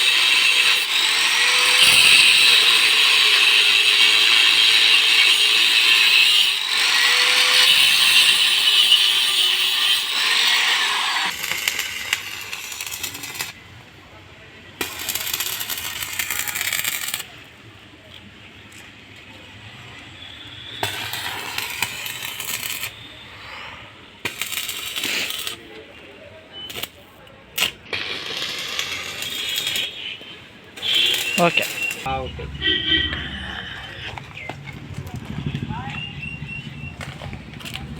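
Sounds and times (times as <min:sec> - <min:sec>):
metalworking tools on steel: 0:00.0 - 0:13.6, 0:14.8 - 0:17.6, 0:20.7 - 0:25.9, 0:26.6 - 0:34.5.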